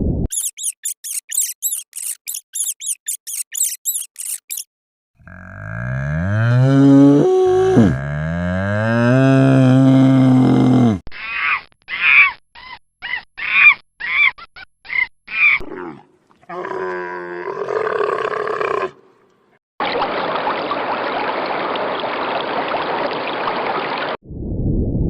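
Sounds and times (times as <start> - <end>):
short high animal calls: 0.3 - 4.6
cow mooing: 5.2 - 11.0.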